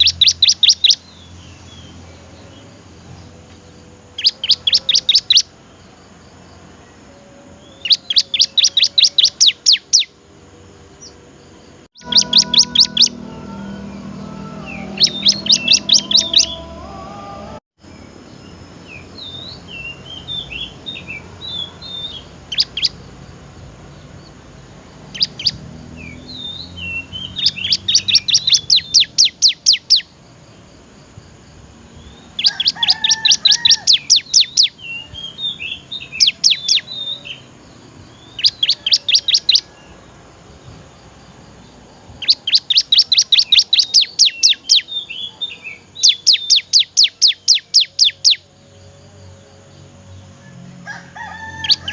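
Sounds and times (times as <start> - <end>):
bird singing rapid high chirps: 0.0 - 5.5, 7.6 - 10.1, 12.0 - 23.2, 25.0 - 30.1, 32.0 - 39.7, 42.2 - 48.5.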